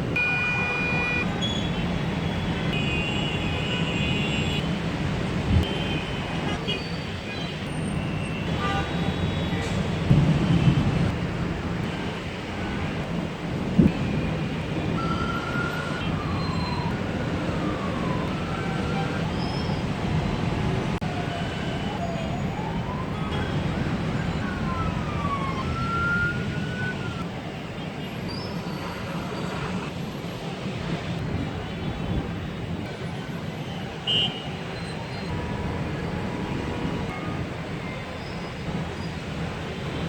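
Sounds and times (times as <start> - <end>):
city traffic hum: 0.0 - 40.0
sirens wailing: 14.9 - 27.3, 35.0 - 38.2.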